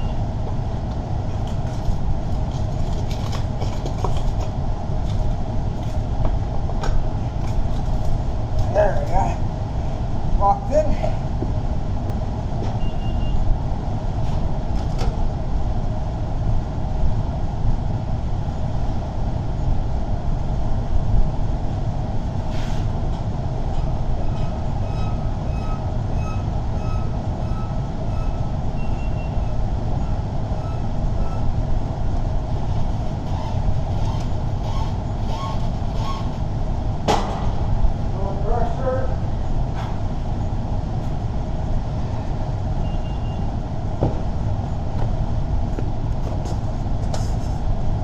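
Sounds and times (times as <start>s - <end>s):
reversing alarm beeping: 0.0s - 0.2s, 12.8s - 13.4s, 24.2s - 31.5s, 42.8s - 43.5s
heavy equipment engine running: 0.0s - 10.4s, 11.2s - 38.6s.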